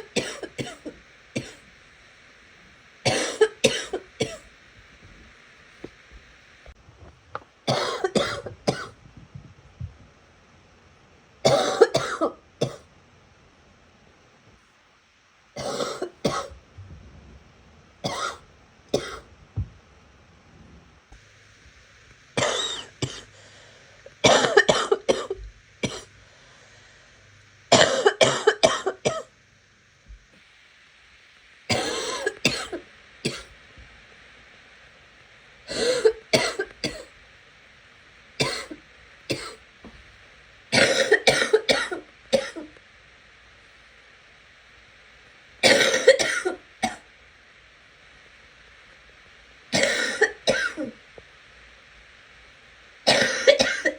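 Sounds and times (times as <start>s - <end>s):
person coughing wetly: 0.0s - 1.6s, 3.0s - 4.5s, 7.7s - 9.0s, 11.4s - 12.8s, 15.6s - 16.6s, 18.0s - 19.3s, 22.4s - 23.3s, 24.2s - 26.1s, 27.7s - 29.2s, 31.7s - 33.5s, 35.7s - 37.1s, 38.4s - 39.6s, 40.7s - 42.7s, 45.6s - 47.0s, 49.8s - 51.0s, 53.1s - 53.9s.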